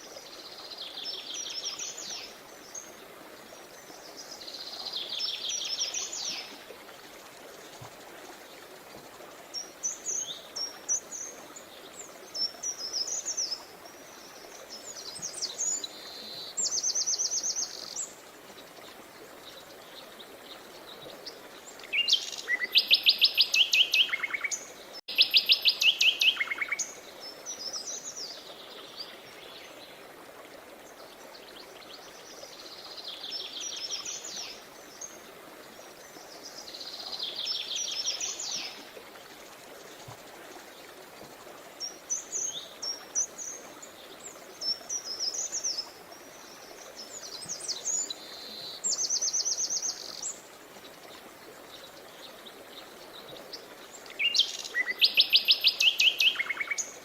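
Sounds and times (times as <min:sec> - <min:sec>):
flowing river water: 0:00.0 - 0:57.0
songbirds trilling and chirping: 0:30.8 - 0:57.0.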